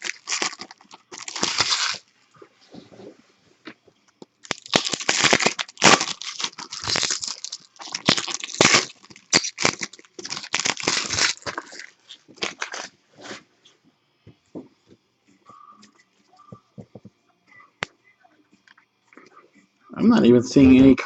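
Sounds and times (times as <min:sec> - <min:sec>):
card pack wrappers crinkling and tearing: 0:00.0 - 0:02.1, 0:04.2 - 0:12.9.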